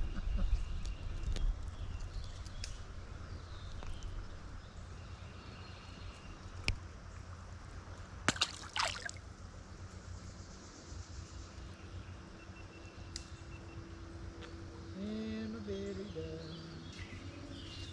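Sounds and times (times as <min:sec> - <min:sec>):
creek water running: 0:07.8 - 0:09.5.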